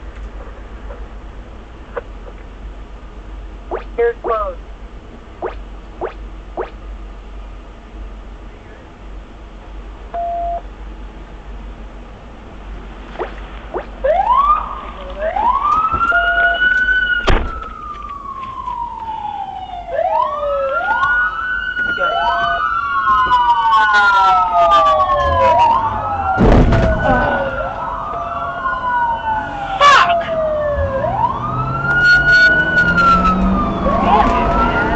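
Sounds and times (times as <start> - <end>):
emergency sirens wailing: 13.8 - 34.9
short thump: 17.3 - 17.7, 26.4 - 27.1.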